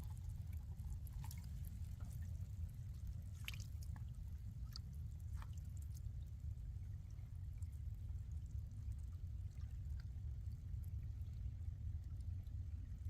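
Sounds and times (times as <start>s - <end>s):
steady low rumble: 0.0s - 13.0s
water drips and splashes: 0.0s - 13.0s.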